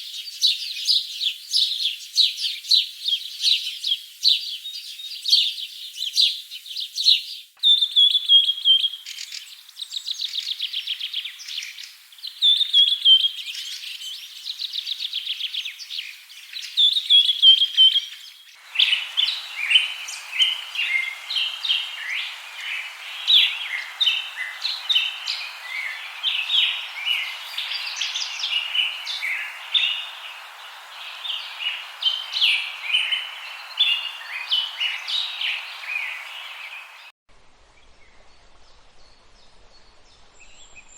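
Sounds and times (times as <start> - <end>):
chorus of bird chirps: 0.0 - 37.1
songbird trilling: 7.6 - 14.0, 16.8 - 37.1
steady hiss: 7.6 - 40.9.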